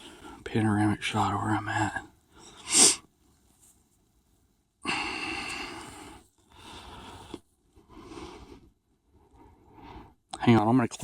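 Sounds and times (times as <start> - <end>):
person breathing out: 4.8 - 7.3.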